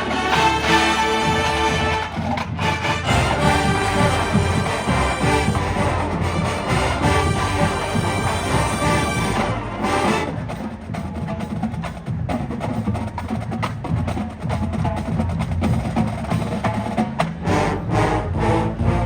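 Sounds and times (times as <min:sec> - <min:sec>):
marching band playing metal: 0:00.0 - 0:19.0.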